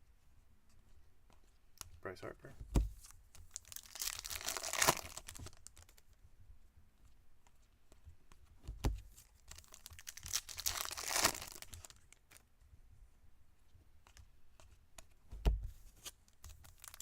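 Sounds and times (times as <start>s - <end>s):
soft thump: 2.6s - 3.0s
foil wrappers tearing and crinkling: 3.6s - 5.6s, 9.6s - 11.9s, 16.7s - 17.0s.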